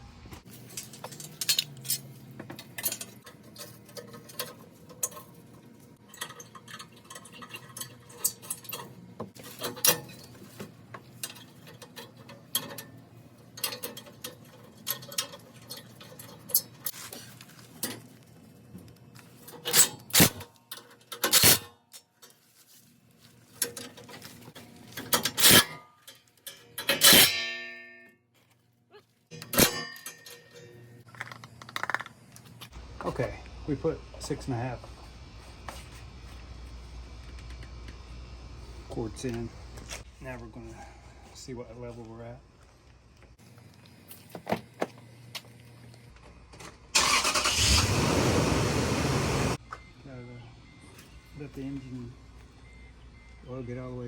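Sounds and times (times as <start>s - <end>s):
metal tools clinking and knocking: 0.5s - 17.0s, 23.6s - 27.4s, 29.3s - 32.1s.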